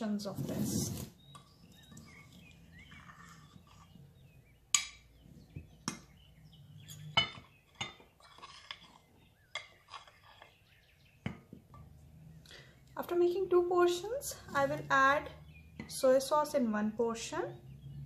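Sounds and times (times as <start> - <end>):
spoon scraping a mixing bowl: 0.4 - 4.6, 6.9 - 10.7.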